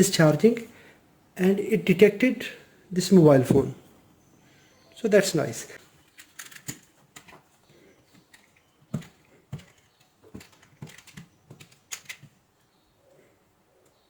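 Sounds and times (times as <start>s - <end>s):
small hard objects clicking: 6.1s - 7.4s, 8.2s - 12.4s.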